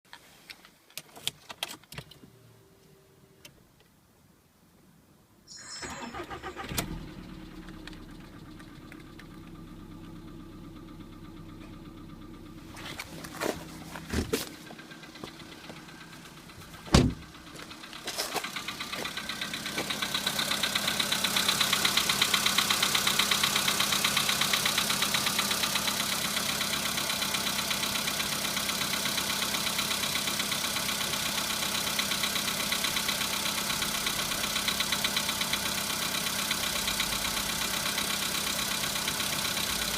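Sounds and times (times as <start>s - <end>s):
car engine idling: 5.9s - 39.9s
thuds: 12.8s - 14.6s, 16.8s - 17.3s.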